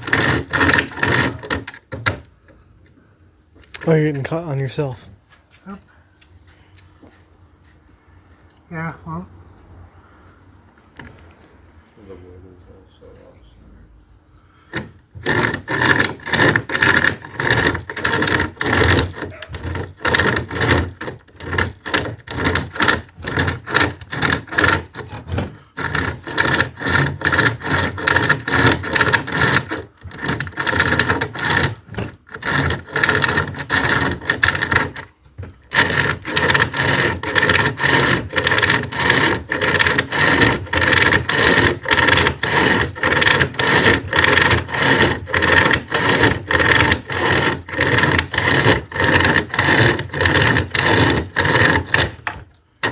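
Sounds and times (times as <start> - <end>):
hand chainsaw sawing wood: 0.0 - 2.3, 3.7 - 5.0, 14.7 - 52.9.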